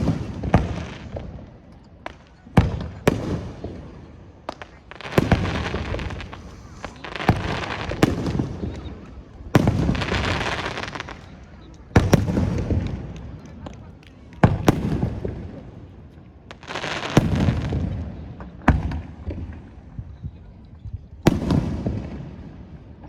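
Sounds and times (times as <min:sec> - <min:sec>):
fireworks booming: 0:00.0 - 0:13.7, 0:14.4 - 0:20.4, 0:21.2 - 0:23.0
fireworks crackling: 0:00.0 - 0:19.9.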